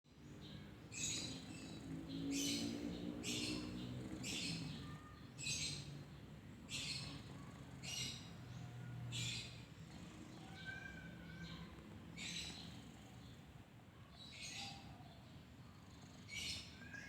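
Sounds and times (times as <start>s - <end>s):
cat snoring: 1.0s - 5.0s, 6.8s - 11.0s, 12.2s - 13.5s, 15.7s - 16.7s.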